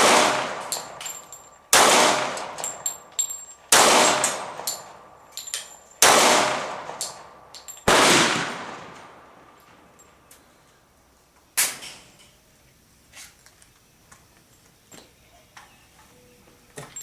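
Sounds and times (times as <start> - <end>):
echoing gunshots: 0.0 - 1.0, 1.7 - 2.8, 3.7 - 5.2, 6.0 - 9.5
light metallic clinks: 0.7 - 1.7, 2.4 - 3.7, 4.6 - 6.0, 7.0 - 7.9, 9.6 - 10.4, 16.7 - 17.0.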